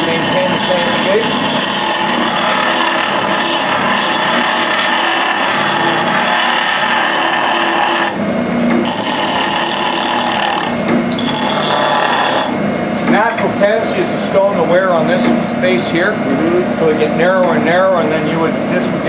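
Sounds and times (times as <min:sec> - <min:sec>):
grinding stone on saw teeth: 0:00.0 - 0:08.2, 0:08.8 - 0:12.5
motor hum: 0:00.0 - 0:19.0.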